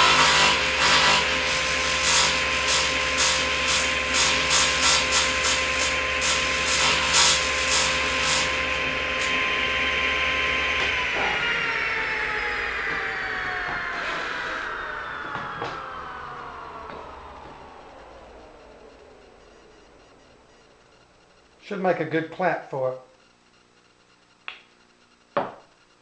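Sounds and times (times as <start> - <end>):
saw cutting wood: 0.0 - 16.2
saw motor spinning down: 0.0 - 20.5
table saw running: 0.0 - 20.5.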